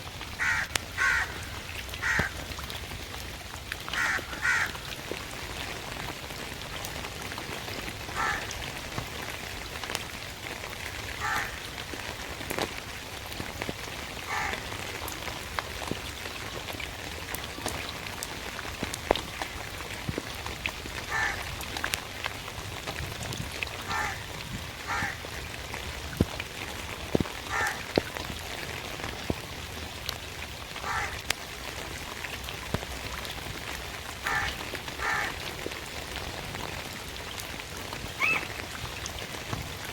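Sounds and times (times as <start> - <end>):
steady rain: 0.0 - 39.9
sharp drips close by: 0.2 - 39.9
crow cawing: 0.4 - 2.4, 4.0 - 4.8, 8.2 - 8.5, 11.2 - 11.6, 14.3 - 14.6, 21.1 - 21.4, 23.9 - 24.2, 24.9 - 25.2, 27.5 - 27.8, 30.8 - 31.2, 34.2 - 35.4, 38.2 - 38.5.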